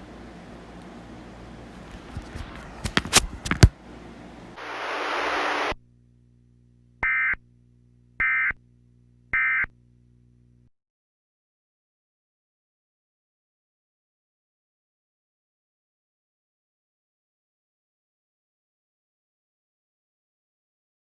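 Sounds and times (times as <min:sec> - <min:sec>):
static hiss: 0:04.6 - 0:05.8.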